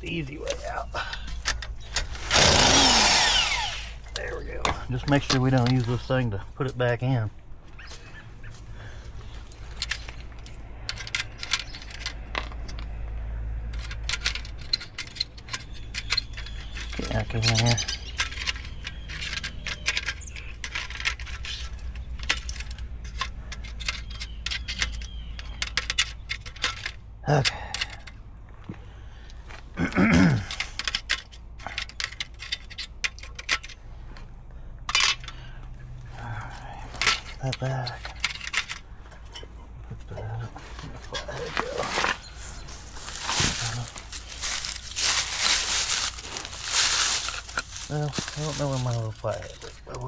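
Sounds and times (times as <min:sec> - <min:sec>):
metal tools clinking: 0:00.3 - 0:06.2, 0:09.5 - 0:12.9, 0:13.7 - 0:27.0, 0:34.9 - 0:35.4, 0:37.0 - 0:39.5, 0:41.0 - 0:50.0.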